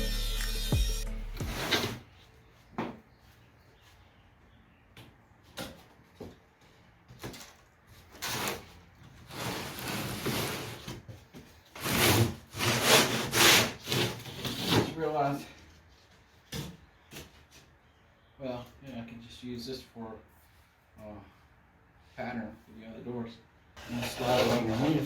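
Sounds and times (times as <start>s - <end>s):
wood scraping on wood: 8.1s - 16.3s, 23.8s - 25.0s.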